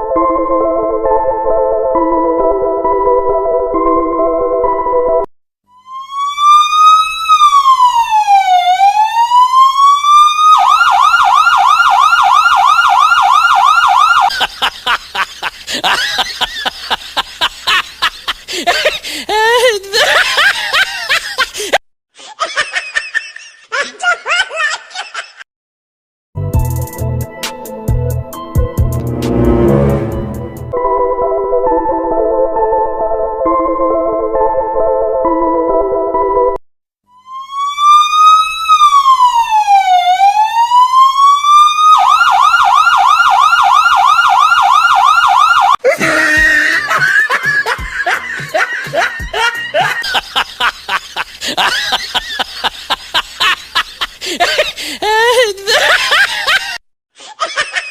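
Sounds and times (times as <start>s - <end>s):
electronic police siren: 5.7s - 14.3s, 37.1s - 45.8s
people laughing and snickering: 14.3s - 25.4s, 45.8s - 57.9s
noisy sound: 28.8s - 30.8s.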